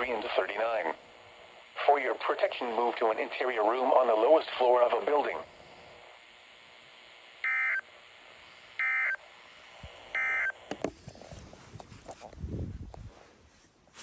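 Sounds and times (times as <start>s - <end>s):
buzzy data tone bursts: 0.0s - 10.8s.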